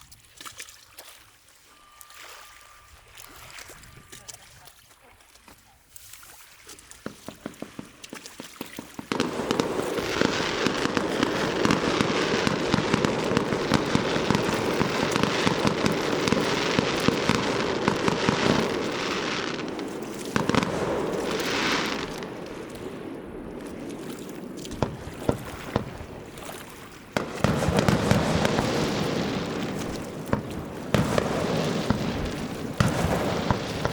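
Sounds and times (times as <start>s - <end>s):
fireworks crackling and popping: 7.0s - 33.9s.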